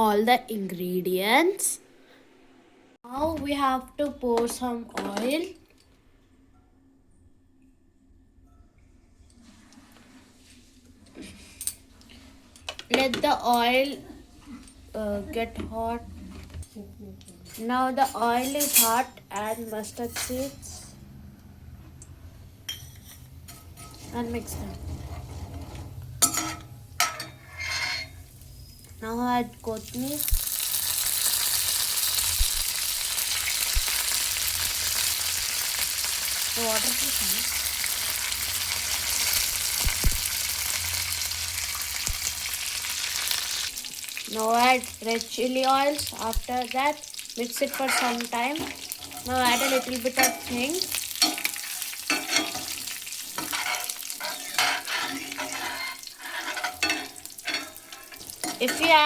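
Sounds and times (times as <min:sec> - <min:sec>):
spoon scraping a pan: 0:22.7 - 0:28.9, 0:47.4 - 0:59.0
seeds sizzling in hot oil: 0:27.9 - 0:59.0.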